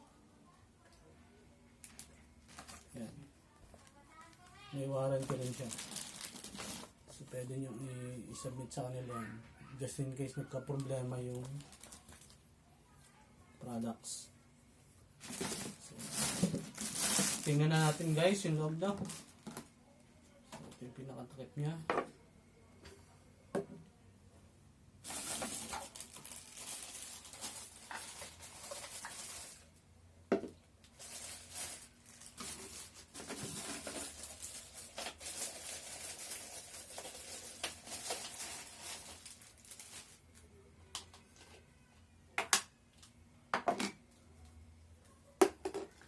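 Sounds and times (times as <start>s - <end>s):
plastic packaging crinkling: 1.8s - 7.2s, 10.5s - 12.4s, 15.2s - 19.8s, 25.0s - 29.8s, 30.8s - 40.4s.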